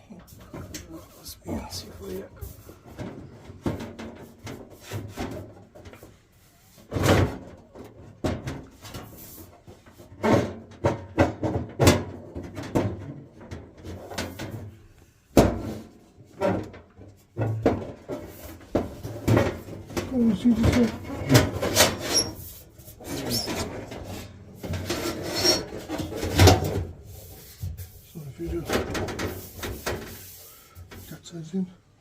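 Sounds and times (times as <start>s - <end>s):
metal parts clunking and scraping: 0.2s - 31.1s.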